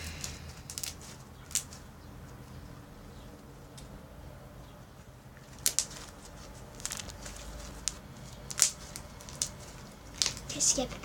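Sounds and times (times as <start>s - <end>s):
slime crackling and popping: 0.2s - 1.8s, 5.4s - 11.0s.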